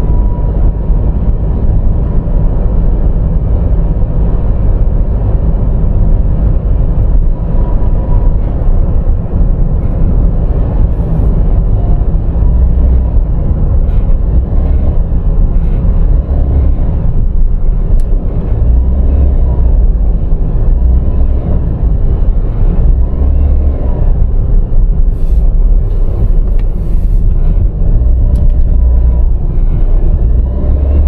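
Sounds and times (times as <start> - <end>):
faint high turbo whistle: 0.0 - 0.8, 7.6 - 8.8
car engine low rumble: 0.0 - 31.0.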